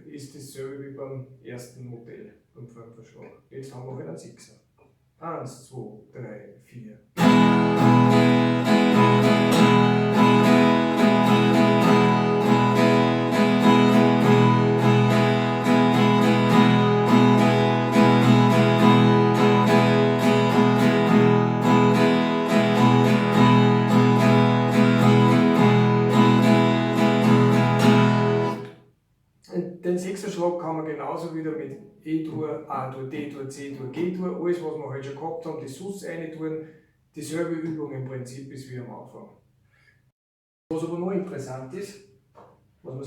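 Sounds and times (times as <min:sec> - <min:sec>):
acoustic guitar strumming: 0:07.2 - 0:28.8.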